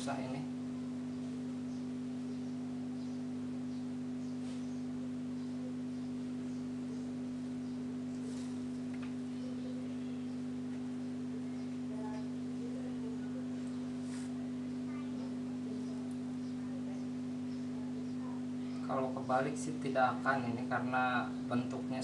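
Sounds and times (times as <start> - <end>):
low electrical hum: 0.0 - 22.0.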